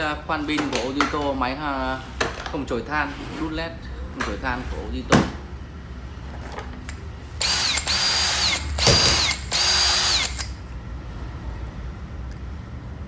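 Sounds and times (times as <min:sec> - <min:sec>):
cordless drill motor whine: 0:07.4 - 0:10.6.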